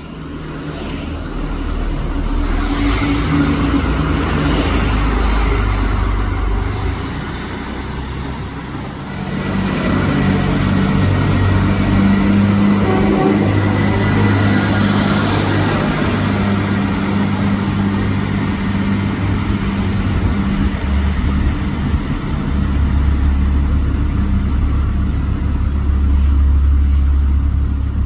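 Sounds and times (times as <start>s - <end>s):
diesel train engine humming: 0.0s - 28.0s.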